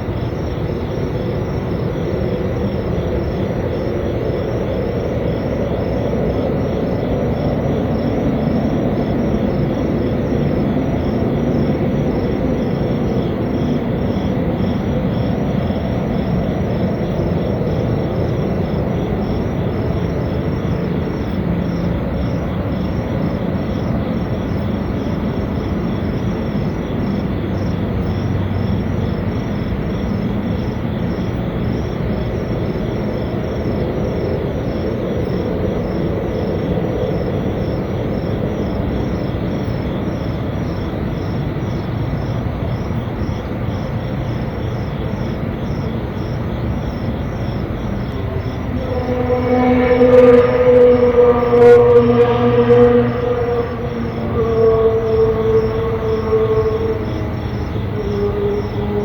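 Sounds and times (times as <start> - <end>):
insects chirping: 0.0 - 59.0
low rumbling drone: 47.6 - 59.0.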